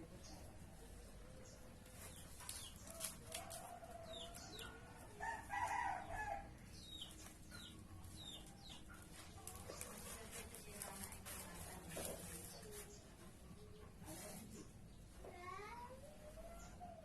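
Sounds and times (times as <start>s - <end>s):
small birds chirping: 0.0s - 17.0s
rooster crowing: 5.0s - 6.5s.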